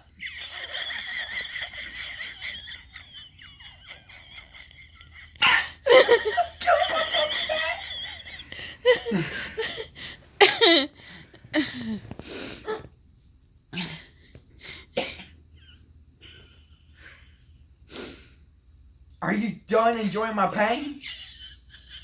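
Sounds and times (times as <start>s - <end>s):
person laughing hard: 0.0s - 10.9s
person coughing and gasping: 10.4s - 10.9s, 13.8s - 14.2s, 14.9s - 15.4s.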